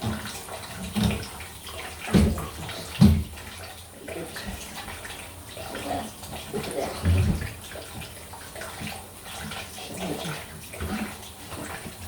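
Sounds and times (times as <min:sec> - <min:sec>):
water running out of a pipe: 0:00.0 - 0:12.0.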